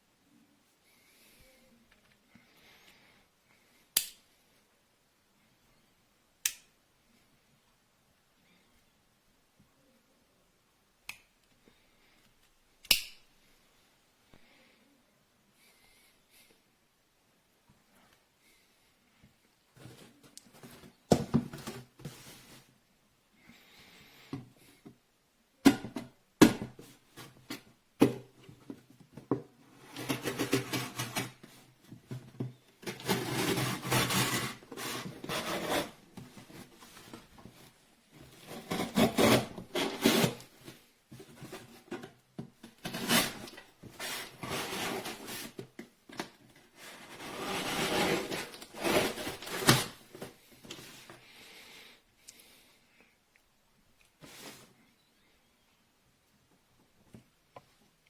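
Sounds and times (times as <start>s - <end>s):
rubbing and scraping: 29.8s - 31.6s, 32.8s - 42.0s, 42.8s - 45.8s, 46.7s - 51.2s.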